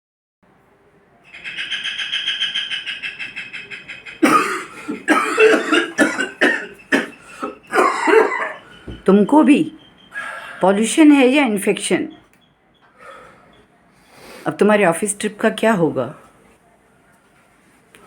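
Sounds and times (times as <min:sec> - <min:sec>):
person coughing hard: 0:04.2 - 0:08.6.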